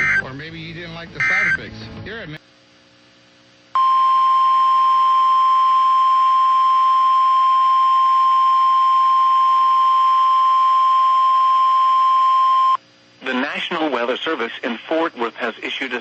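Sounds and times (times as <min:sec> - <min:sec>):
steady loud alert tone: 0:00.0 - 0:00.3
faint broadcast hiss: 0:00.0 - 0:07.4, 0:12.7 - 0:16.0.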